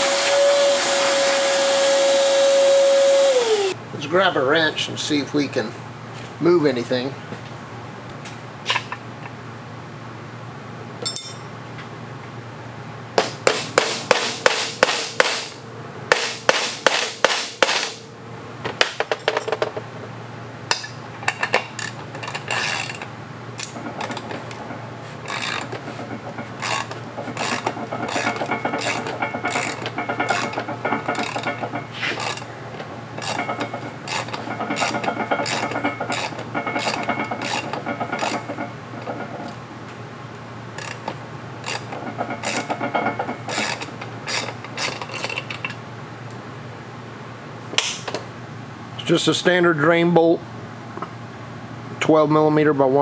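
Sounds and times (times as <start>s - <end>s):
ratchet wrench clicking: 21.4s - 32.5s, 33.2s - 38.7s, 40.8s - 45.8s.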